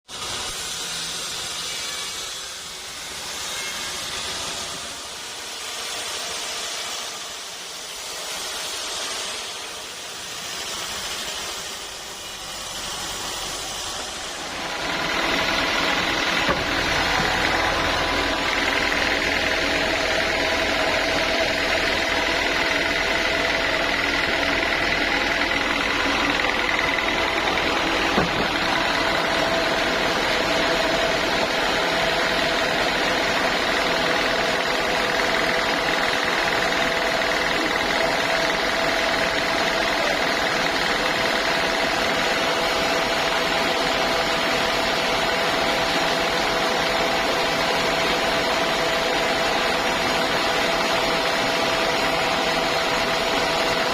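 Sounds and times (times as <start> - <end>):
sawmill saw whining: 0.1 - 53.9
sharp knock: 28.1 - 28.6.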